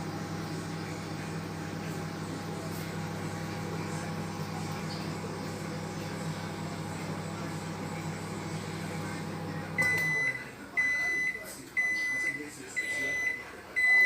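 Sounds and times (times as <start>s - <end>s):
microwave oven humming: 0.0s - 14.0s.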